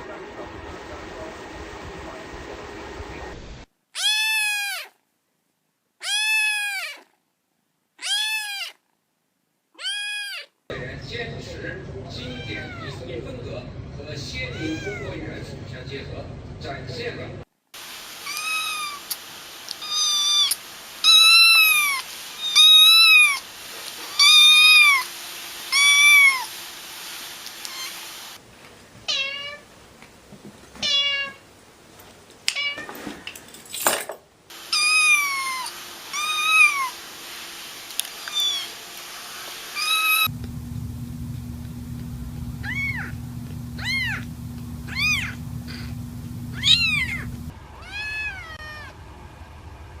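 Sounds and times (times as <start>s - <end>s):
cat meowing: 3.9s - 5.0s, 6.0s - 7.1s, 8.0s - 8.8s, 9.7s - 10.6s, 12.2s - 13.0s, 14.5s - 15.2s, 18.2s - 23.4s, 24.1s - 25.1s, 25.7s - 26.5s, 27.6s - 28.0s, 29.1s - 29.6s, 30.8s - 31.4s, 34.7s - 37.0s, 38.2s - 38.8s, 39.8s - 40.3s, 42.6s - 43.2s, 43.8s - 45.9s, 46.5s - 49.0s
steady background hiss: 17.8s - 32.4s.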